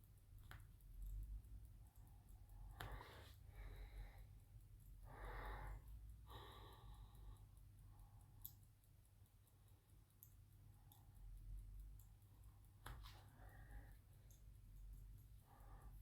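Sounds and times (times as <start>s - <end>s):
faint breaths: 2.6s - 8.5s, 12.9s - 14.5s, 15.4s - 16.0s.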